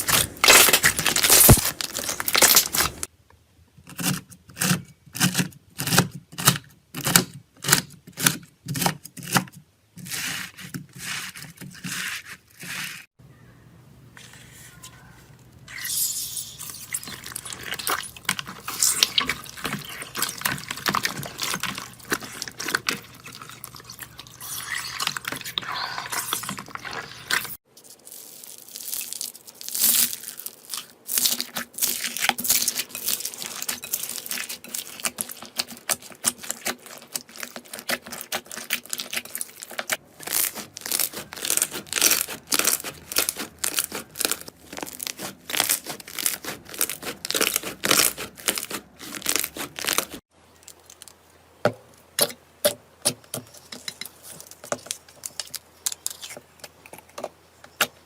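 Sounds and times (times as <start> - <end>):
slime crackling and popping: 0.0 - 3.1, 15.9 - 51.1.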